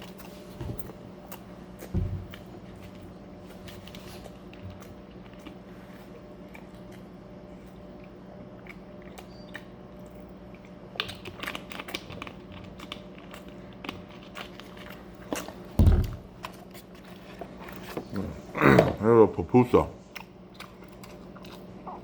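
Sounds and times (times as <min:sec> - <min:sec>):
person chewing and biting: 0:00.0 - 0:18.2, 0:20.0 - 0:22.0
steady low hum: 0:00.0 - 0:22.0
loud thump: 0:15.8 - 0:16.3.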